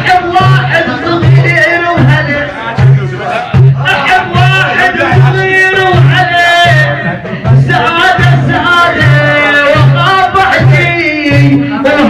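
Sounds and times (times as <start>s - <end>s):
person singing: 0.0s - 12.0s
steady drum beat: 0.0s - 12.0s.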